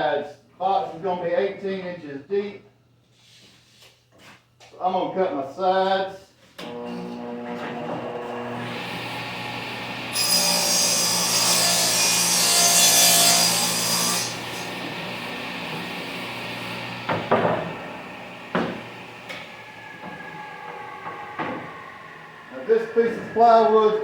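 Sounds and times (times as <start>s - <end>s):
table saw cutting plywood: 6.6s - 24.0s.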